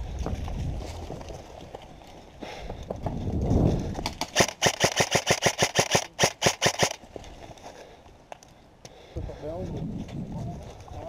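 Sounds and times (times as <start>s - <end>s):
airsoft gun automatic fire: 4.4s - 7.0s.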